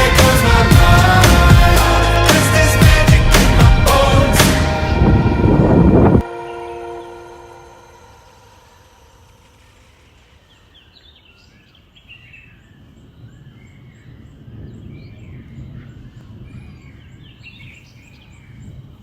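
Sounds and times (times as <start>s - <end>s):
low rumble: 0.0s - 10.1s.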